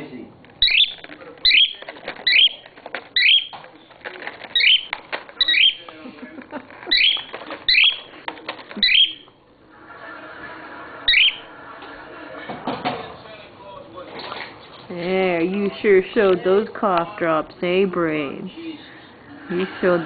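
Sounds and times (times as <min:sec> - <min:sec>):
plastic package crackling: 0:00.5 - 0:08.8
cockatiel chirping: 0:00.6 - 0:02.6, 0:03.2 - 0:03.6, 0:04.5 - 0:05.8, 0:06.9 - 0:08.1, 0:08.8 - 0:09.3.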